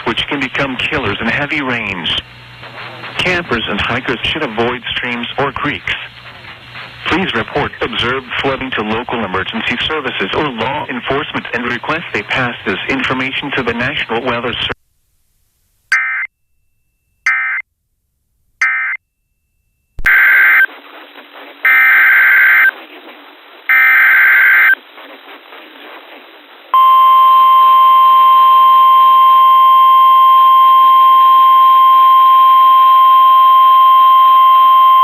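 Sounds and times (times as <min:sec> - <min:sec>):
data tone bursts: 0:20.0 - 0:20.7, 0:21.7 - 0:22.7, 0:23.7 - 0:24.8, 0:26.8 - 0:35.0
steady warning alarm tone: 0:21.7 - 0:22.7, 0:23.7 - 0:24.8, 0:26.8 - 0:35.0.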